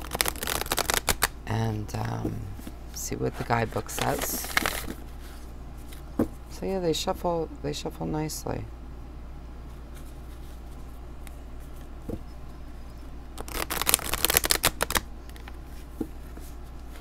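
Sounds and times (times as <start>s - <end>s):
cards being shuffled: 0.0s - 6.3s, 13.4s - 17.0s.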